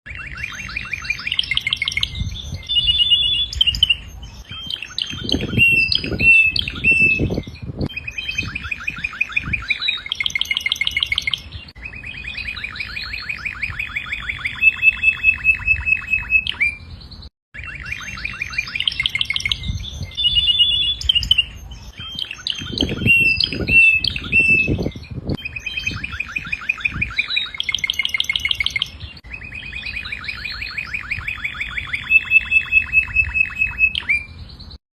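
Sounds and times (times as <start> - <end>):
canary singing trills: 0.1 - 34.8.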